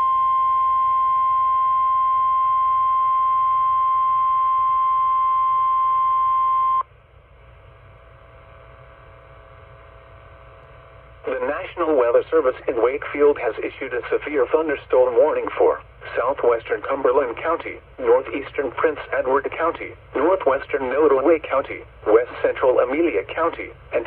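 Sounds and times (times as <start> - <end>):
loud steady warning beep: 0.0 - 6.9
faint radio hiss: 5.3 - 24.0.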